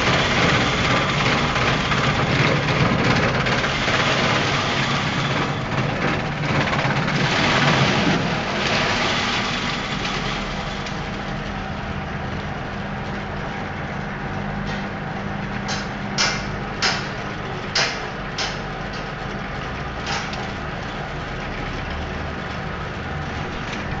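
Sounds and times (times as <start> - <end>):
chopping machine running: 0.0 - 24.0
sharp knocks: 15.7 - 19.1.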